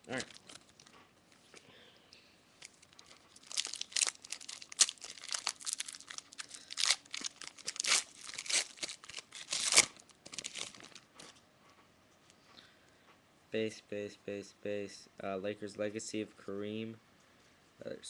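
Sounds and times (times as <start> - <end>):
foil wrapper tearing and crinkling: 0.0 - 0.9, 2.6 - 11.0.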